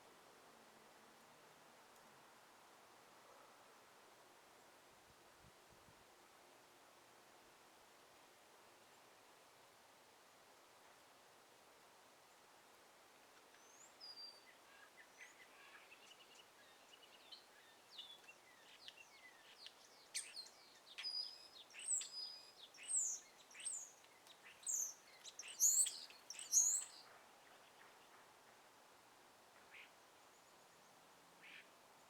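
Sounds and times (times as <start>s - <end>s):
faint outdoor hiss: 0.0s - 32.0s
songbirds chirping: 12.2s - 32.0s.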